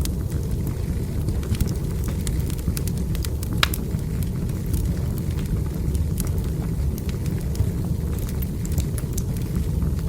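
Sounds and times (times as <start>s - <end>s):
steady low rumble: 0.0s - 10.0s
wood fire crackling: 0.0s - 10.0s.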